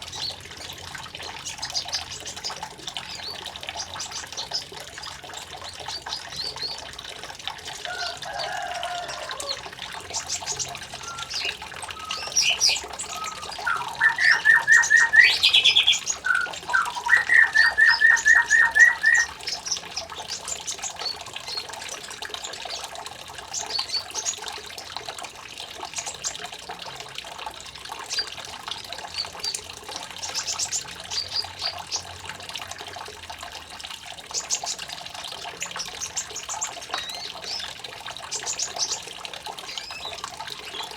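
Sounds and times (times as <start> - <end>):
running water trickling: 0.0 - 40.9
songbird chirping and trilling: 7.7 - 24.6, 35.5 - 40.9.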